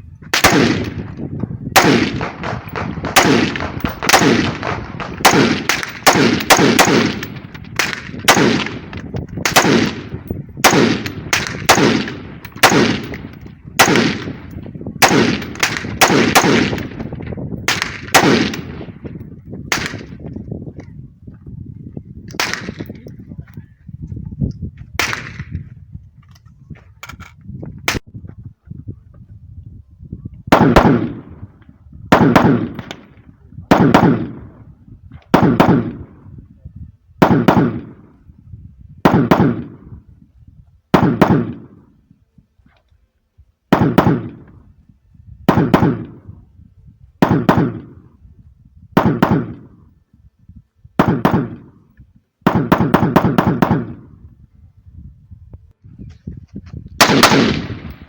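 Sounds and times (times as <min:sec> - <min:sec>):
rifle shots with echo: 0:00.3 - 0:20.2, 0:22.3 - 0:23.0, 0:25.0 - 0:25.5, 0:30.5 - 0:36.3, 0:37.2 - 0:38.2, 0:39.0 - 0:40.1, 0:40.9 - 0:42.0, 0:43.7 - 0:44.6, 0:45.5 - 0:46.4, 0:47.2 - 0:48.2, 0:49.0 - 0:49.8, 0:51.0 - 0:51.8, 0:52.4 - 0:54.2, 0:57.0 - 0:58.0.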